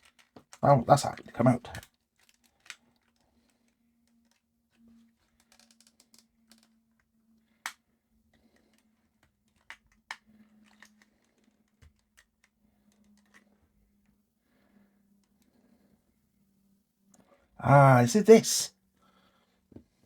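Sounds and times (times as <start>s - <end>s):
plastic parts clicking and tapping: 0.0s - 7.9s, 8.6s - 13.6s.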